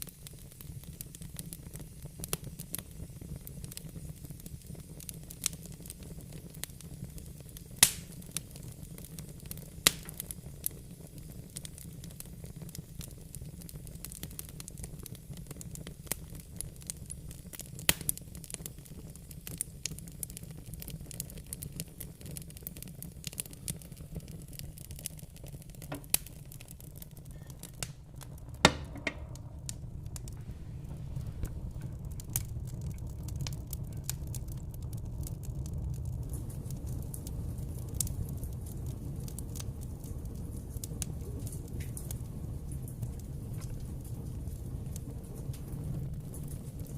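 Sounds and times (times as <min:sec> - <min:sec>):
fire crackling and popping: 0:00.0 - 0:46.9
fire flames rumbling: 0:00.0 - 0:46.9.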